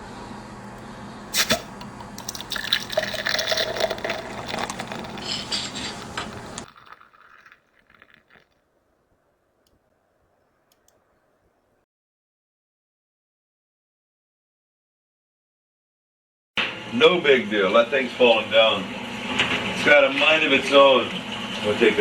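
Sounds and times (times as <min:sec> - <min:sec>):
liquid running: 0:01.4 - 0:09.6.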